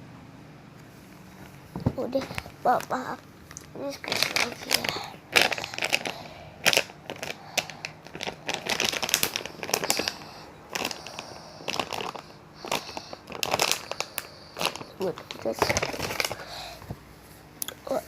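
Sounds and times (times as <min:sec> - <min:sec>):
squishy toy crinkling: 0:02.1 - 0:16.5.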